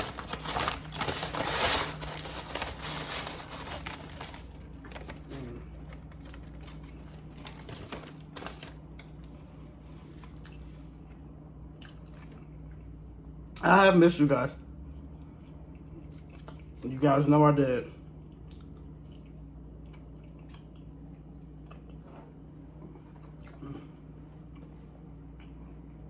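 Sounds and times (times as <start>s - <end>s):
food wrapper crinkling: 0.0s - 9.3s.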